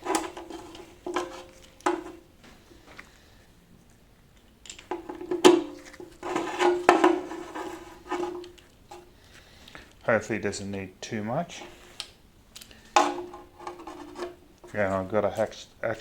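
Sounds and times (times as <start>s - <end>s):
metal tools clanking: 0.0s - 2.2s, 4.7s - 9.1s, 12.6s - 15.6s.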